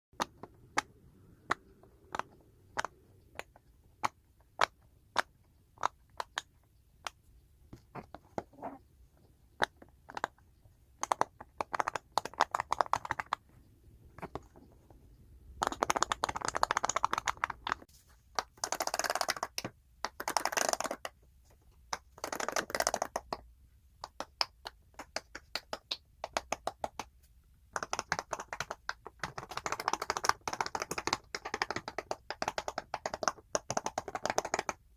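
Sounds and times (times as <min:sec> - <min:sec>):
fidget toy bubbles popping: 0:09.6 - 0:14.6, 0:15.5 - 0:21.2, 0:21.9 - 0:27.1.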